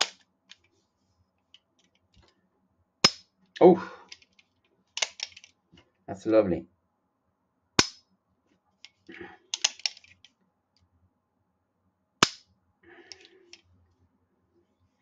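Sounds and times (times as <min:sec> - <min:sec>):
pistol slide clicking and sliding: 0:00.0 - 0:00.2, 0:05.0 - 0:05.5, 0:09.6 - 0:10.3
sharp metallic snap: 0:03.0 - 0:03.3, 0:07.8 - 0:08.1, 0:12.2 - 0:12.5.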